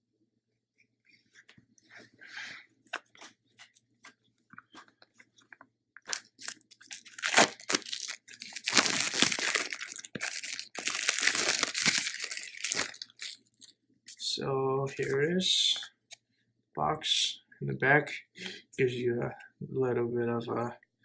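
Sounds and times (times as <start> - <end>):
plastic shrink wrap crinkling and tearing: 6.0 - 13.8.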